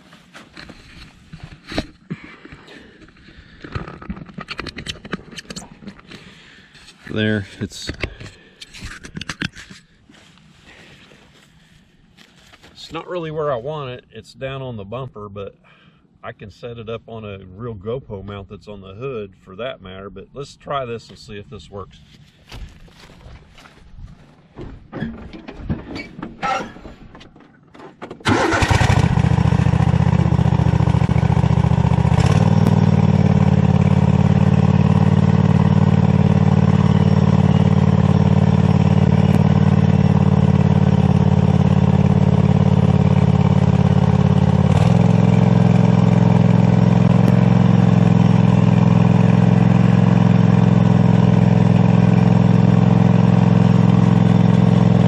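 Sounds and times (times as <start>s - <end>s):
four-wheeler engine running: 1.6s - 8.4s, 28.2s - 55.0s.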